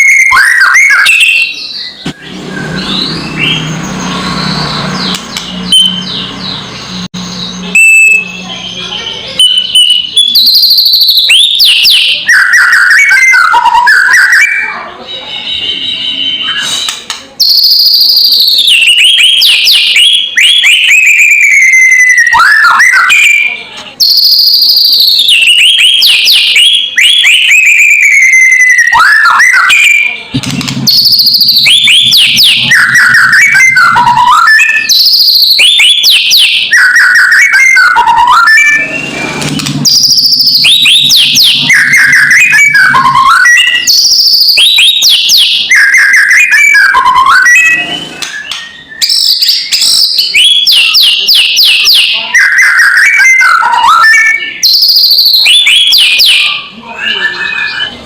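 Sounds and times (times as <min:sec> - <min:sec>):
bird whistling: 0:00.0 - 0:14.7, 0:30.9 - 0:58.0.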